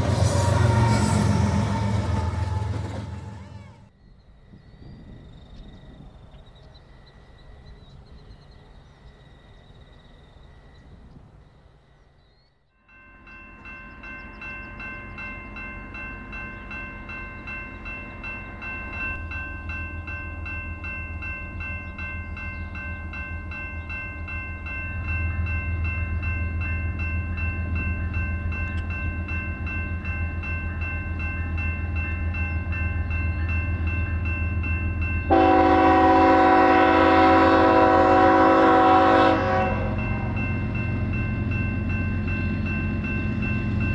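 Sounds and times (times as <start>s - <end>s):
crossing bell dinging: 0.0s - 3.8s, 12.8s - 43.9s
locomotive horn: 0.0s - 4.0s, 35.3s - 40.4s
diesel locomotives rumbling: 0.0s - 9.2s, 13.0s - 43.9s.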